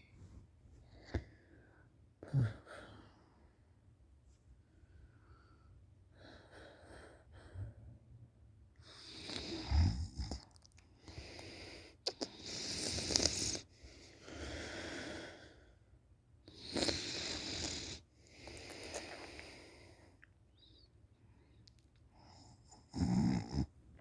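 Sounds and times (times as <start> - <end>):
person snoring: 9.2 - 10.4, 22.9 - 23.7.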